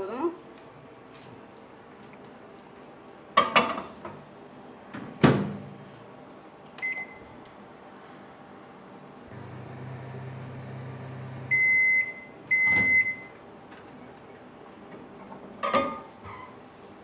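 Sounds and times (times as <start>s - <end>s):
microwave high beeps: 6.8s - 7.3s, 10.7s - 13.4s
microwave oven humming: 8.8s - 14.9s.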